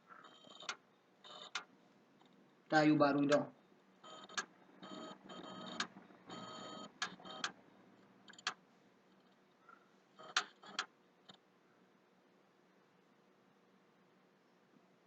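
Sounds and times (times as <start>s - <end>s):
hard drive clicking: 3.2s - 8.6s, 9.2s - 11.4s.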